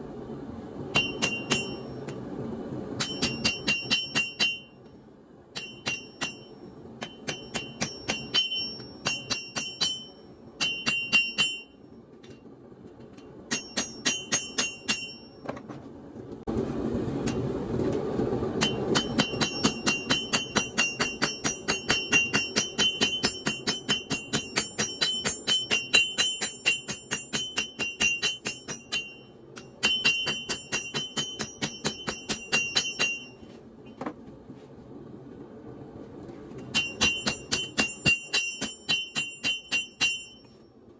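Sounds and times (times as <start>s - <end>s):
steady rushing noise: 0.0s - 40.9s
hammer striking steel on anvil: 0.9s - 2.2s, 3.0s - 4.9s, 5.5s - 12.4s, 13.2s - 15.6s, 18.6s - 34.1s, 36.7s - 40.6s.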